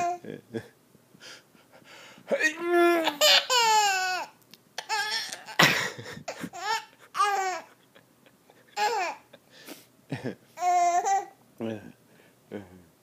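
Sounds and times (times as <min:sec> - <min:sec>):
baby laughing: 0:02.8 - 0:09.4, 0:10.6 - 0:11.4.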